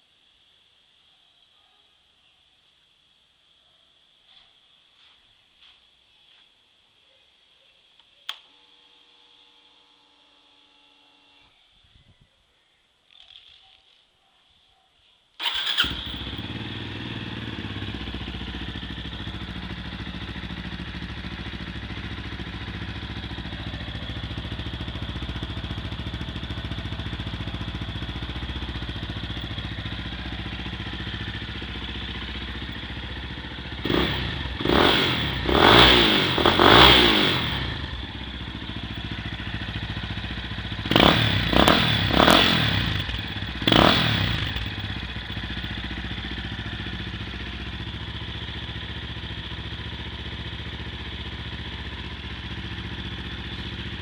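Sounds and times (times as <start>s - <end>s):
motorcycle engine idling and revving: 15.4s - 54.0s.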